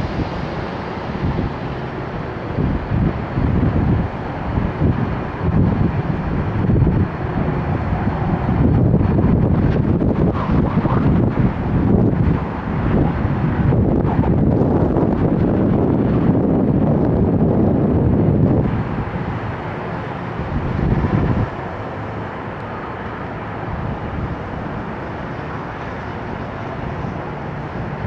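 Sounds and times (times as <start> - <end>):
jet engine landing: 0.0 - 28.0.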